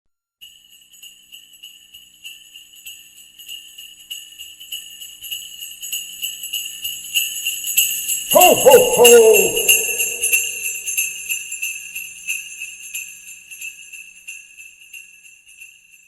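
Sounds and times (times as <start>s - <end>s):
sleigh bells jingling: 7.4s - 11.0s.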